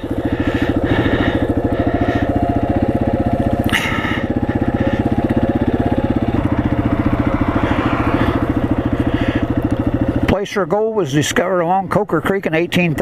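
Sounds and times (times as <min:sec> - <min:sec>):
motorcycle engine idling: 0:00.0 - 0:13.0.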